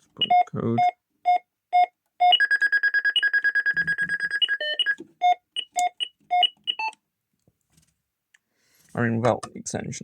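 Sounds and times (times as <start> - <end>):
burglar alarm rapid pulsing beep: 0.2 - 6.9
keypad beeps: 0.2 - 7.0.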